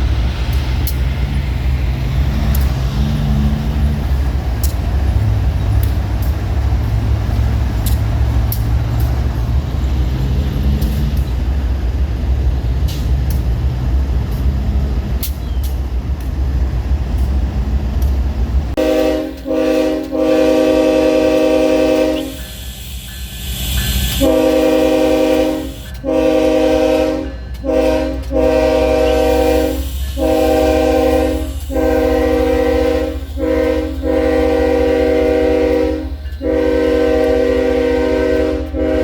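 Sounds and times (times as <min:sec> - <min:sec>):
diesel locomotive rumble: 0:00.0 - 0:39.0
locomotive air horn blasts: 0:18.8 - 0:22.5, 0:24.1 - 0:39.0.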